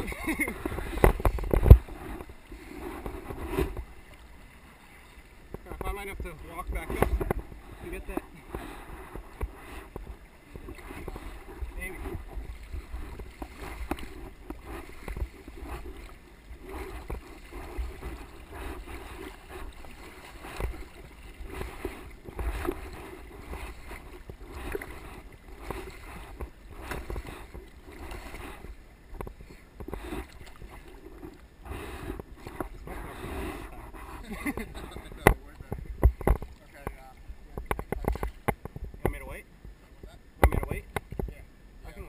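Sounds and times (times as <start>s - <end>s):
water splashing around a kayak: 0.0s - 42.0s
steady low rumble: 5.5s - 29.6s
knocks on kayak: 34.6s - 39.3s.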